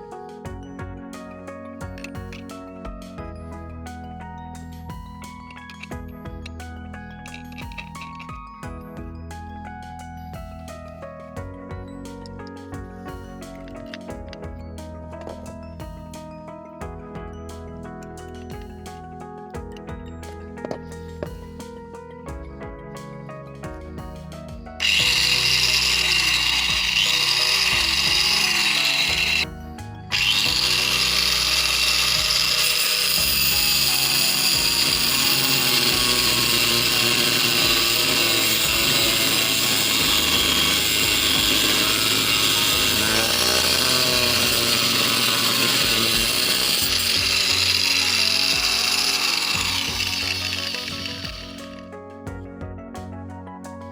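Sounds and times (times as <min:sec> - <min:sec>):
angle grinder grinding metal: 0:07.3 - 0:08.3, 0:24.8 - 0:51.8.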